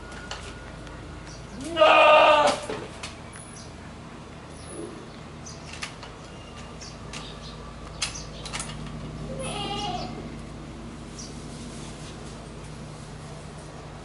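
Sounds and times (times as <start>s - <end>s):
goat bleating: 1.6s - 2.7s, 9.3s - 10.2s.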